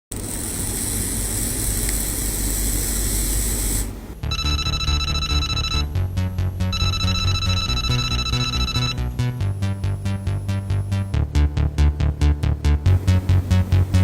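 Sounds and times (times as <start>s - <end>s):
steady hiss with low rumble: 0.2s - 8.4s
electronic music with steady beat: 4.2s - 14.0s.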